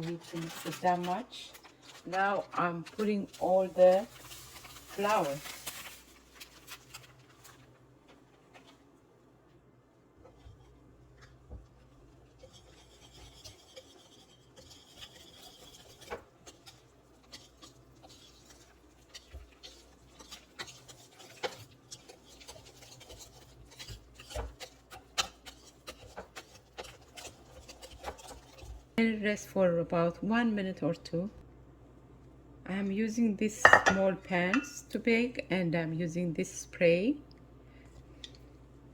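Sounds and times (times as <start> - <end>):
utensil scraping through batter: 0.0 - 8.8, 10.2 - 29.0.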